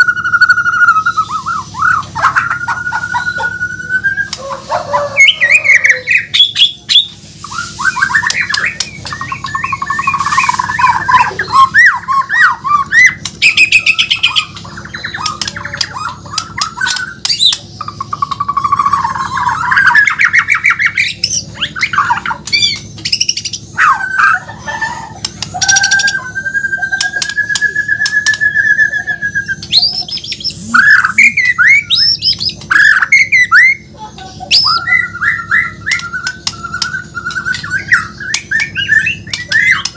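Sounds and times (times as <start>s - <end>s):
bird long wavering whistle: 0.0s - 15.3s, 23.8s - 33.9s
songbird warbling and trilling: 0.0s - 39.9s.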